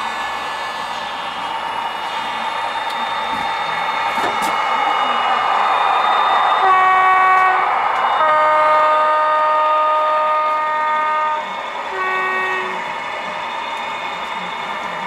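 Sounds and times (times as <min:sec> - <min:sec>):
model train air horn chords: 0:06.6 - 0:12.8.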